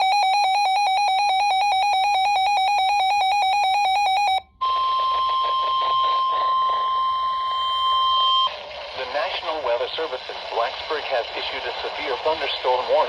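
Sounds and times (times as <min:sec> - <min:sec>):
radio alarm beeping: 0:00.0 - 0:09.3
radio static: 0:04.6 - 0:07.6, 0:08.5 - 0:13.0.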